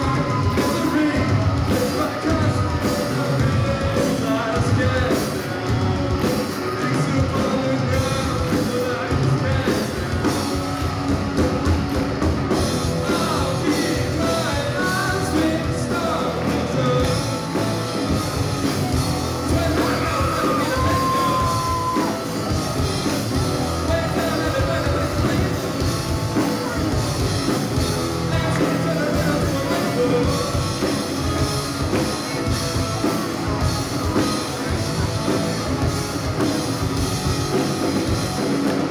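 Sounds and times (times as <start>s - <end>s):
person singing: 0.0s - 10.6s, 13.0s - 17.7s, 19.3s - 22.4s, 28.3s - 32.4s
rock band playing: 0.0s - 38.9s.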